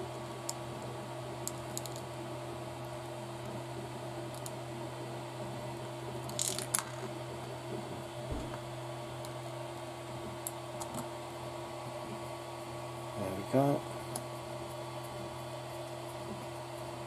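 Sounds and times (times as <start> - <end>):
steady background hum: 0.0 - 17.0
small parts clicking: 1.4 - 2.0.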